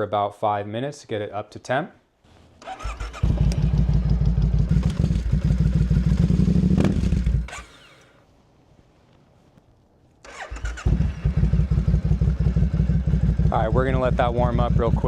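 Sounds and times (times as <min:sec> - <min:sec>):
engine revving: 0:02.7 - 0:08.1, 0:10.3 - 0:15.0
motorcycle engine running: 0:03.2 - 0:07.6, 0:10.8 - 0:15.0.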